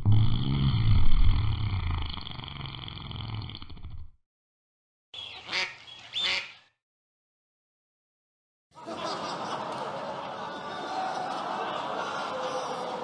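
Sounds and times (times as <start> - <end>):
low rumbling effect: 0.0 - 1.9
duck quacking: 5.3 - 6.6
crowd laughter: 8.7 - 13.0.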